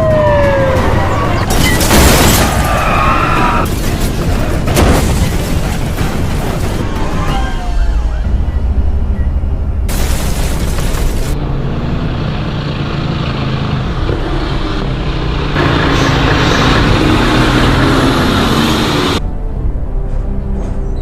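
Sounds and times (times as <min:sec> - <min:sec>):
road and wind noise: 0:10.9 - 0:21.0.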